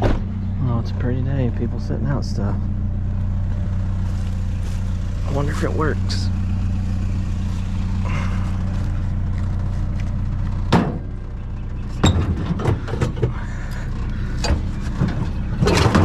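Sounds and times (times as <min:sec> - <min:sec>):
truck engine idling: 0:00.0 - 0:16.0
knocks and rattles: 0:09.4 - 0:16.0.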